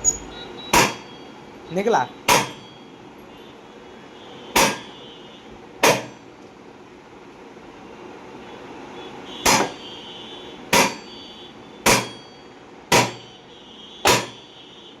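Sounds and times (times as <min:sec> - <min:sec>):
hammer striking metal: 0:00.0 - 0:01.2, 0:02.3 - 0:02.8, 0:04.6 - 0:05.0, 0:05.8 - 0:06.2, 0:09.4 - 0:09.8, 0:10.7 - 0:11.1, 0:11.8 - 0:13.3, 0:14.0 - 0:14.5.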